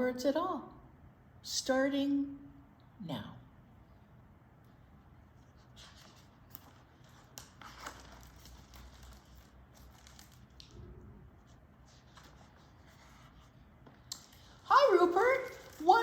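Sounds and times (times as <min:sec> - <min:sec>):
picture book rustling: 0:05.3 - 0:16.0.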